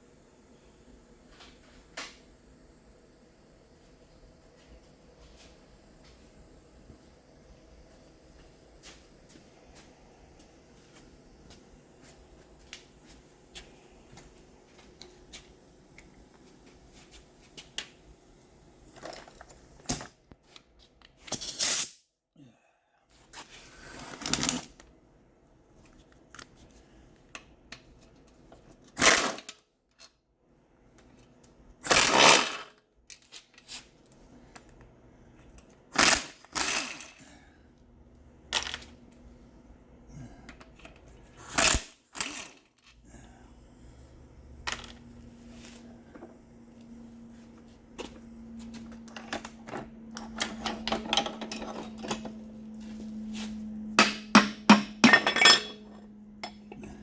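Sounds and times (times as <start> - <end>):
pneumatic impact wrench bursts: 36.0 - 37.2, 41.4 - 42.5
metal parts clinking: 54.0 - 56.8.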